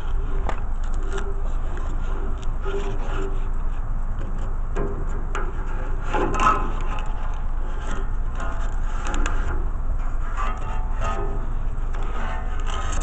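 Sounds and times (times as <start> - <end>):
steady low rumble: 0.0 - 13.0.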